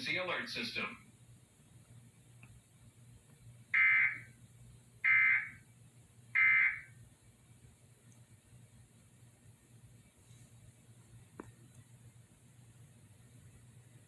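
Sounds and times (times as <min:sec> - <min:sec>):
digital data tone bursts: 0:03.8 - 0:04.2.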